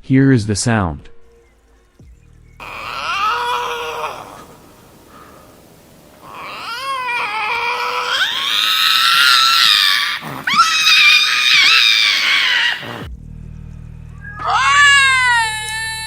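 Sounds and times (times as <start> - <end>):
faint low hum: 1.0 - 16.0
lynx wailing: 2.6 - 13.1, 14.3 - 16.0.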